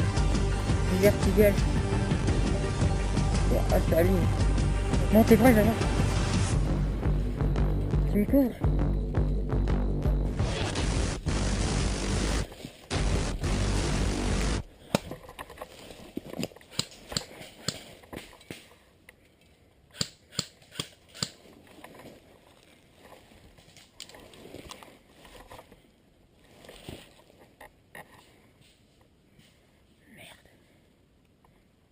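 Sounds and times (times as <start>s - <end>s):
music: 0.0s - 14.6s
airsoft guns firing pops: 16.7s - 17.8s, 19.9s - 21.4s.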